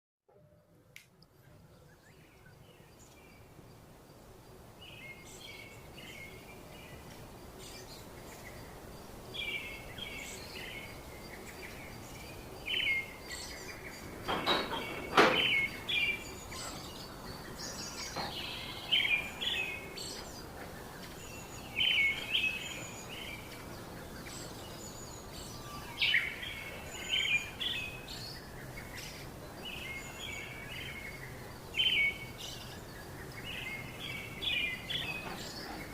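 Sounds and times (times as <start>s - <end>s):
steady background hiss: 0.3s - 35.9s
loud knocks: 14.3s - 15.7s.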